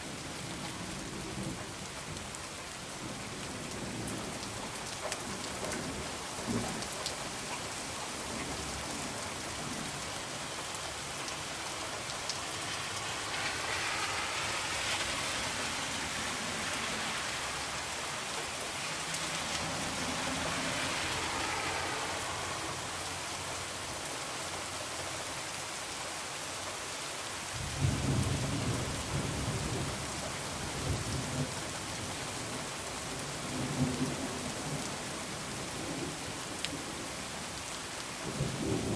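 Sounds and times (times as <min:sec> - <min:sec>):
heavy rain: 0:00.0 - 0:38.9.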